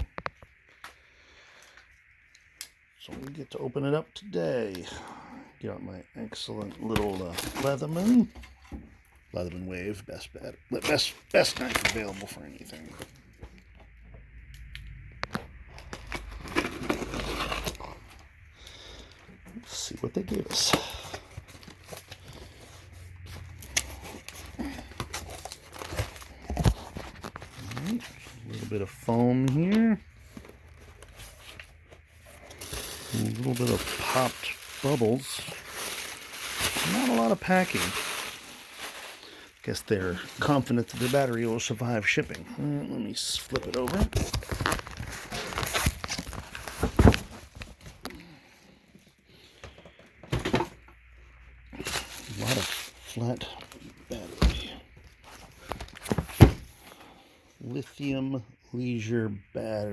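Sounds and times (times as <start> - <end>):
packing rustling and scraping: 15.7 - 42.3, 43.4 - 48.2, 51.7 - 57.0
cardboard box being opened: 15.8 - 18.2, 20.4 - 39.2, 43.5 - 48.1.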